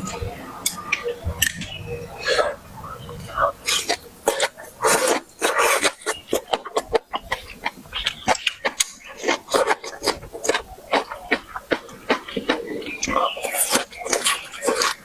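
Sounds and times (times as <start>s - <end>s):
chewing and lip-smacking: 3.2s - 15.0s.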